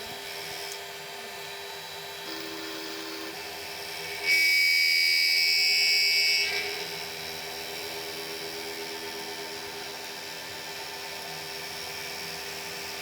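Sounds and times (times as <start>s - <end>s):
milling machine running: 0.1s - 5.5s
high-pitched cutting whine: 2.2s - 13.0s.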